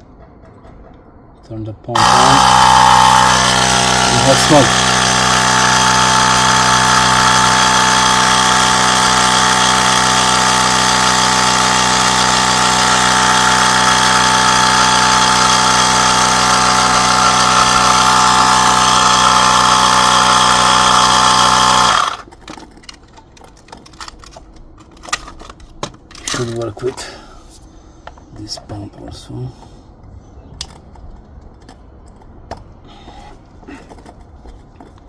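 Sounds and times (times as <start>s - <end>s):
electric air pump humming: 2.0s - 22.3s.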